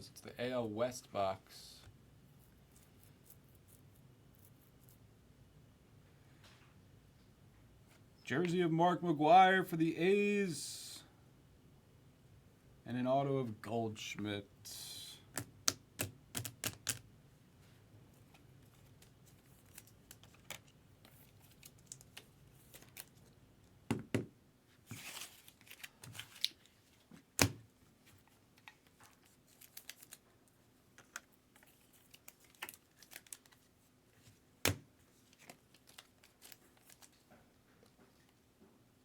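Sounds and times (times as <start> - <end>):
cards tapping and clicking: 15.3 - 17.0, 34.6 - 34.8.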